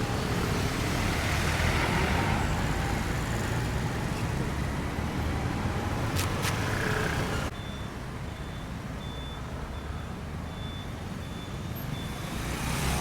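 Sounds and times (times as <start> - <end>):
road traffic: 0.0 - 13.0
vehicle engine rumble: 0.0 - 13.0
reversing alarm beeps: 7.5 - 12.4.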